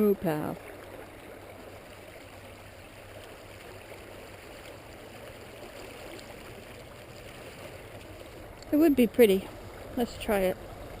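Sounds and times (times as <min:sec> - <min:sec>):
stream flowing: 0:00.0 - 0:11.0
faint light ticks: 0:07.9 - 0:08.8.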